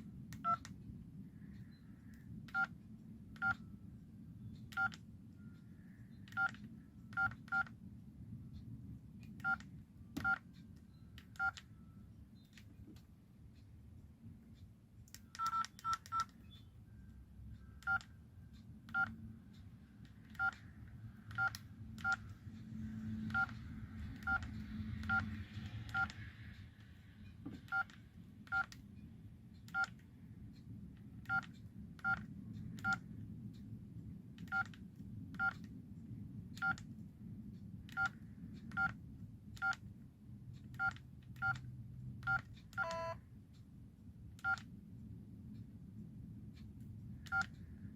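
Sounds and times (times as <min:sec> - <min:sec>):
phone keypad beeps: 0:00.4 - 0:00.7, 0:02.5 - 0:02.8, 0:03.4 - 0:03.7, 0:04.7 - 0:07.8, 0:09.4 - 0:12.0, 0:15.2 - 0:18.2, 0:18.9 - 0:19.2, 0:20.3 - 0:22.3, 0:25.0 - 0:26.2, 0:27.6 - 0:28.8, 0:29.7 - 0:30.0, 0:31.2 - 0:33.0, 0:34.5 - 0:34.8, 0:35.4 - 0:35.6, 0:37.9 - 0:39.0, 0:39.6 - 0:39.8, 0:40.8 - 0:41.6, 0:42.2 - 0:43.2, 0:44.4 - 0:44.7, 0:47.3 - 0:47.6.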